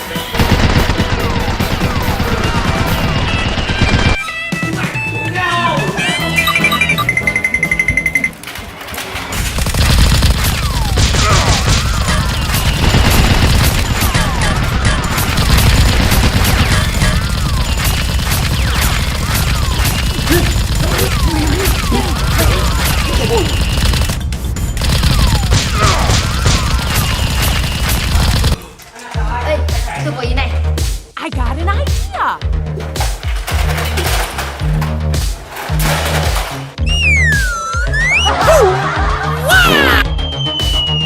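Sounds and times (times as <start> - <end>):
background music: 0.0 - 41.0
rapid gunfire: 0.3 - 4.3, 9.3 - 28.6.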